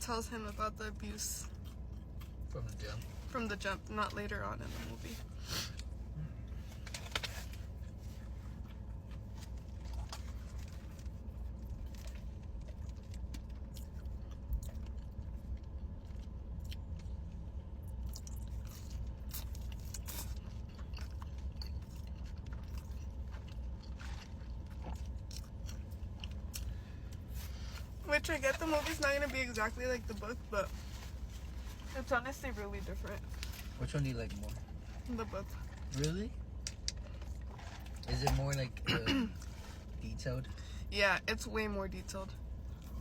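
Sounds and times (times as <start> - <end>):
steady low hum: 0.0 - 43.0
people chewing and biting: 8.5 - 28.0.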